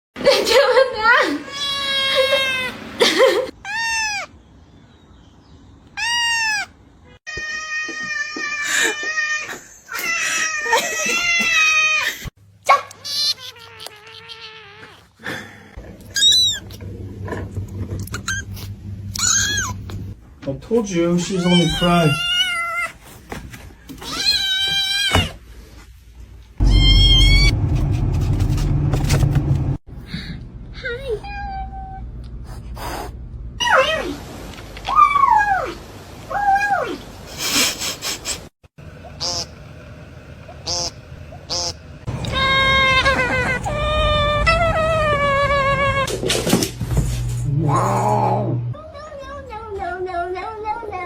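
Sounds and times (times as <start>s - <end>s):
cat meowing: 13.0s - 15.0s, 21.3s - 22.9s, 26.6s - 27.5s, 42.1s - 46.1s
loud low rumbling: 26.6s - 31.0s, 38.9s - 46.1s.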